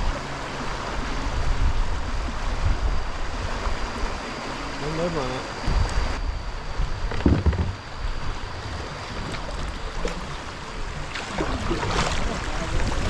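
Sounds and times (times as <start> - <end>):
wind buffeting microphone: 1.0 - 4.2, 5.6 - 13.0
low thump: 7.1 - 7.8
river water rushing: 8.6 - 13.0.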